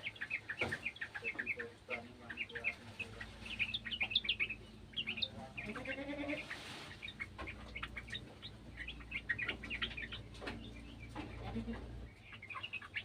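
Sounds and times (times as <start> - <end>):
bird chirping: 0.0 - 13.0
drawn-out bleat-like bird cry: 5.5 - 6.6, 11.3 - 12.1.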